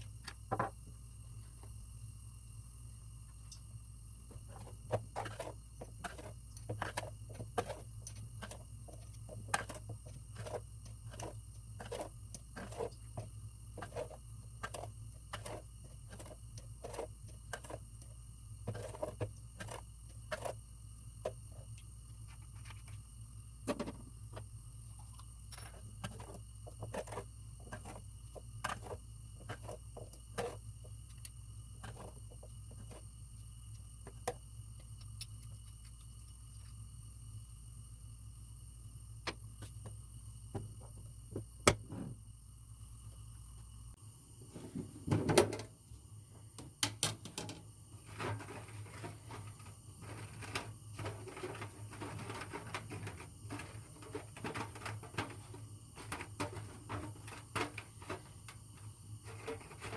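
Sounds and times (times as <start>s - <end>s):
steady low hum: 0.0s - 59.9s
small objects clicking and tapping: 4.3s - 36.8s, 46.6s - 59.9s.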